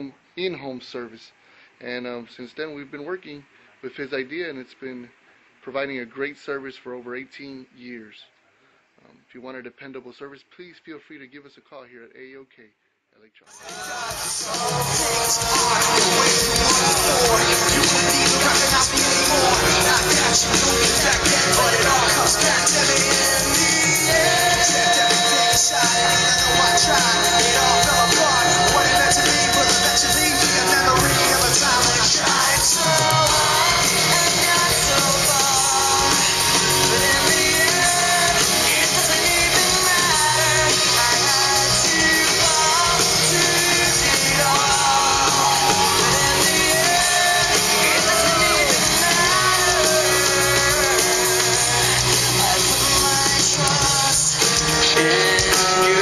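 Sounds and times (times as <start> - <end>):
rock song with singing: 13.5 - 56.0.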